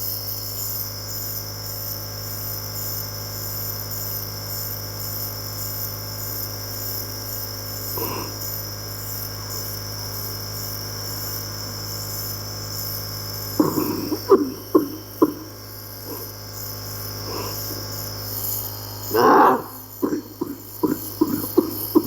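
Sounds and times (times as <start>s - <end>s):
nebulizer humming and hissing: 5.9s - 22.0s.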